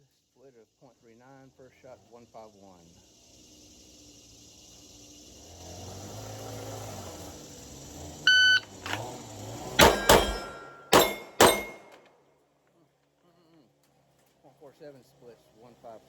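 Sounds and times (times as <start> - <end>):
shot timer beep: 8.3 - 8.7
handgun shots: 9.8 - 12.0.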